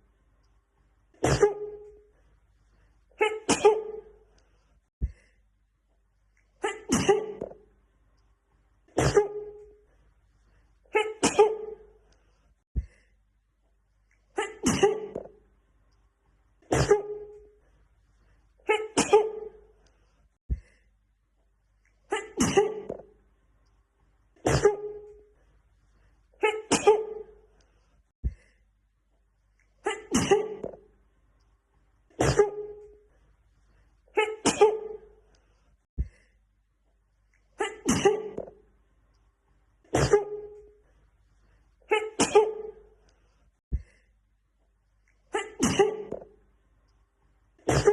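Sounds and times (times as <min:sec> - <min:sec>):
woman sneezing: 0:01.2 - 0:02.0, 0:03.2 - 0:04.2, 0:06.6 - 0:07.6, 0:08.9 - 0:09.6, 0:10.9 - 0:11.9, 0:14.4 - 0:15.3, 0:16.6 - 0:17.4, 0:18.7 - 0:19.6, 0:22.1 - 0:23.0, 0:24.4 - 0:25.1, 0:26.4 - 0:27.4, 0:29.8 - 0:30.8, 0:32.1 - 0:32.8, 0:34.2 - 0:35.1, 0:37.6 - 0:38.5, 0:39.9 - 0:40.6, 0:41.9 - 0:42.8, 0:45.3 - 0:46.3, 0:47.6 - 0:47.9.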